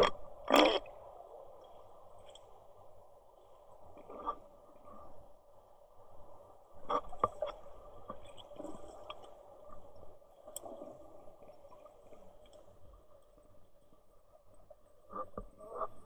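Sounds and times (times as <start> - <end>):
muffled water sloshing: 0.0 - 16.0.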